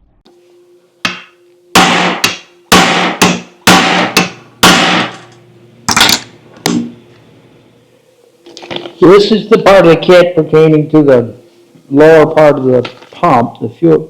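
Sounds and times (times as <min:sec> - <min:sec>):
hammer striking metal punch: 0:01.0 - 0:05.3.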